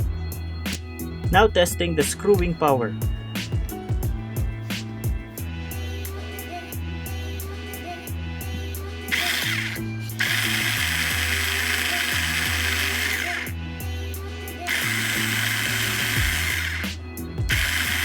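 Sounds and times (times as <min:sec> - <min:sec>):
cordless screwdriver driving screw: 0:09.1 - 0:13.5, 0:14.7 - 0:16.9, 0:17.5 - 0:18.0.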